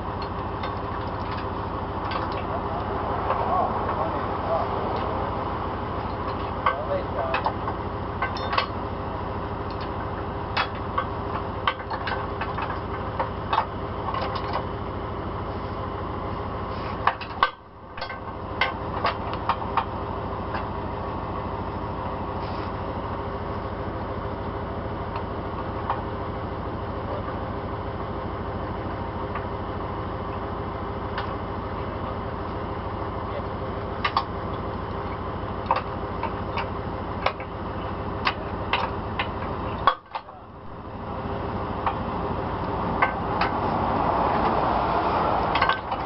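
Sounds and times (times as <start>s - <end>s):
truck engine running: 0.0s - 46.0s
sharp metallic clicks and knocks: 0.2s - 4.1s, 6.0s - 8.8s, 9.7s - 14.7s, 17.0s - 20.7s, 34.0s - 37.6s, 38.2s - 41.0s, 41.8s - 44.7s, 45.3s - 46.0s.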